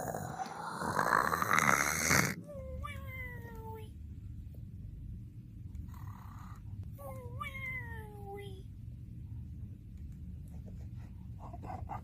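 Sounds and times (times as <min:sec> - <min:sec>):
cartoon snoring: 0:00.0 - 0:02.4.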